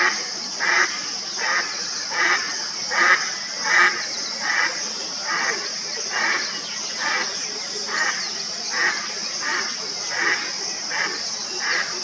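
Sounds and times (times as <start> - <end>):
crickets chirring: 0.0 - 12.0
duck quacking: 8.8 - 12.0.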